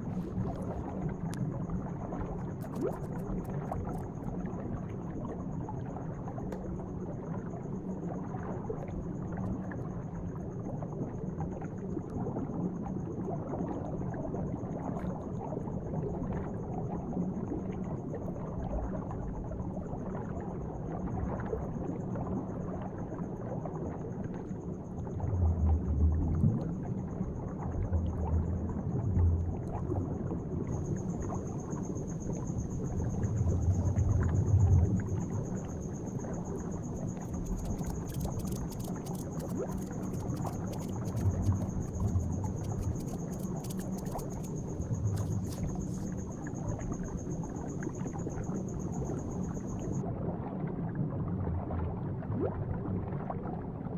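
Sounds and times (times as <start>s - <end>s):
underwater bubbling and gurgling: 0.0s - 53.9s.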